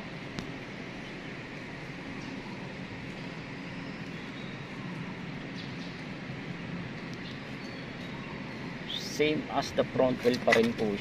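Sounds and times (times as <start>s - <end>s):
low hum: 0.0s - 10.0s.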